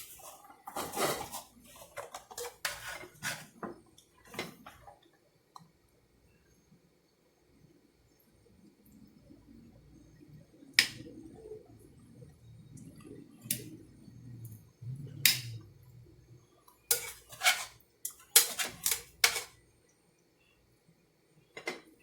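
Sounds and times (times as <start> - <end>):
utensils and dishes clinking: 0.0 - 3.5, 16.9 - 19.6
soft handling noise: 0.0 - 5.0.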